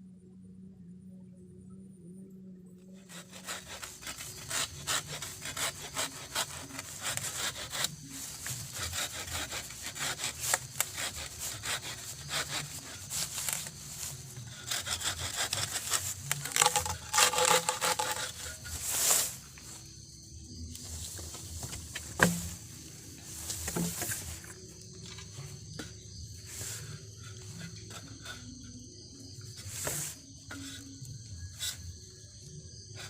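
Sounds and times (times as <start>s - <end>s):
hand saw cutting wood: 3.0s - 19.3s, 21.7s - 22.6s.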